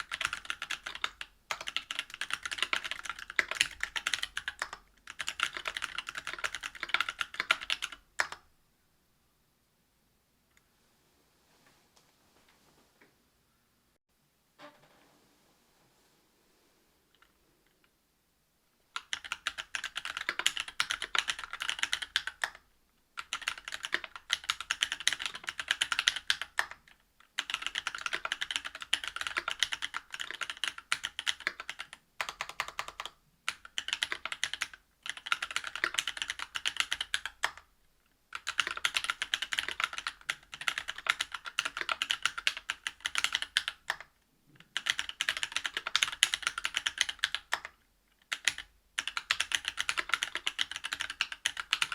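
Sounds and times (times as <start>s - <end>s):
mechanical keyboard typing: 0.0s - 8.4s, 19.0s - 22.6s, 23.2s - 37.7s, 38.3s - 44.1s, 44.7s - 51.9s.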